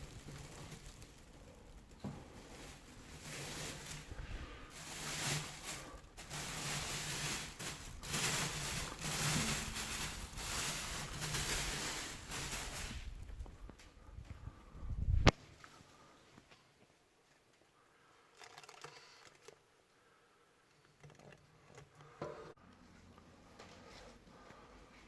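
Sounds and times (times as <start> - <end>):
packaging rustling: 0.0 - 13.8.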